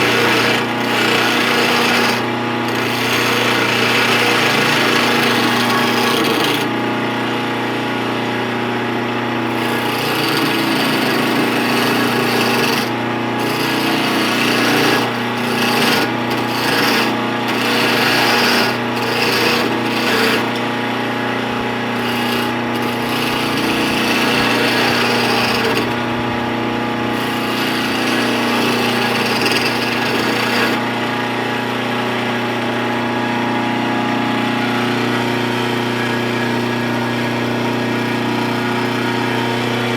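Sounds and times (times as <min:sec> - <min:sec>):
turning tool scraping wood: 0:00.0 - 0:06.9, 0:09.0 - 0:31.1
wood lathe motor hum: 0:00.0 - 0:39.9.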